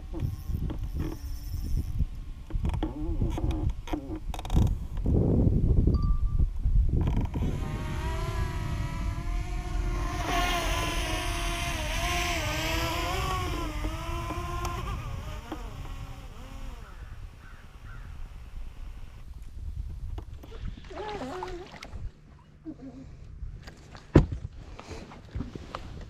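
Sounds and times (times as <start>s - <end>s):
low rumble: 5.5s - 16.6s
boat motor whining: 7.0s - 19.3s.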